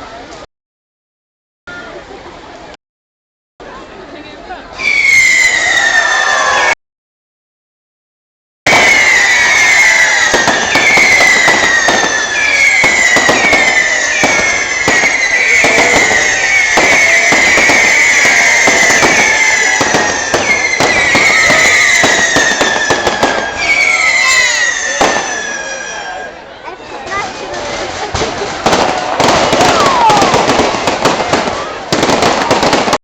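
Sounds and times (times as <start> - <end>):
firework bangs and crackles: 4.8 - 6.8, 8.7 - 33.0
whistling fireworks: 4.8 - 6.8, 8.6 - 26.5, 27.1 - 33.0.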